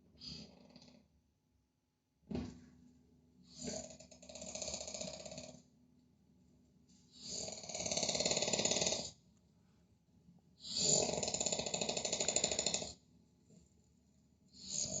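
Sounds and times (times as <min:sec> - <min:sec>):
person snoring loudly: 0:07.2 - 0:09.2, 0:10.6 - 0:13.0, 0:14.6 - 0:15.0.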